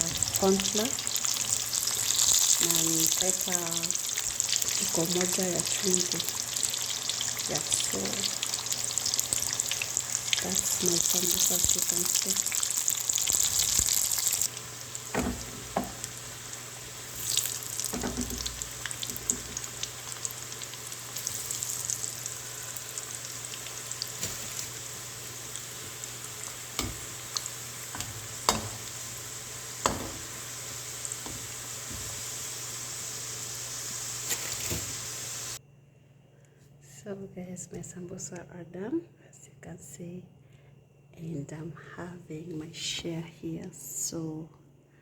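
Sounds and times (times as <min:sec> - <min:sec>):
food sizzling in hot oil: 0:00.0 - 0:35.6.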